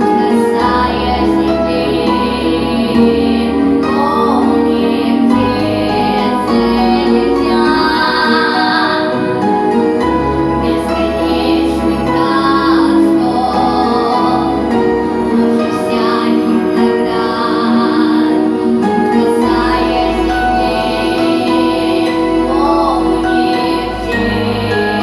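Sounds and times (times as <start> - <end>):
instrumental backing music: 0.0 - 25.0
woman singing: 0.0 - 25.0.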